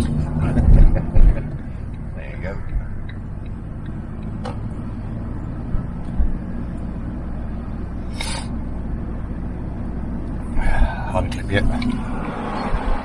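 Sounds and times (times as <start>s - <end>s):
van engine and road rumble: 0.0s - 13.0s
short hiss: 8.1s - 8.5s.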